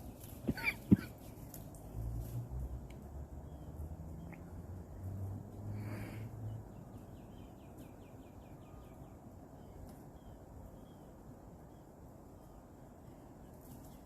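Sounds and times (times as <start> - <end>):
outdoor background noise: 0.0 - 14.0.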